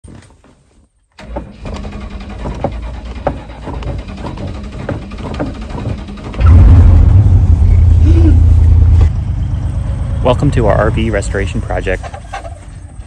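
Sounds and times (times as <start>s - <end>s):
ticks and rattles: 1.2s - 6.5s
vehicle engine running: 1.2s - 13.0s
loud deep rumble: 6.2s - 11.8s.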